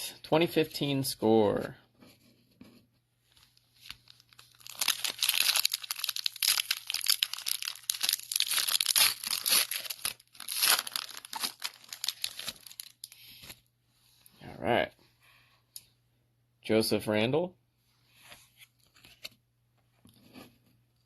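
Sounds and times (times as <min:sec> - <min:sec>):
plastic wrapper tearing and crinkling: 0:03.8 - 0:13.2.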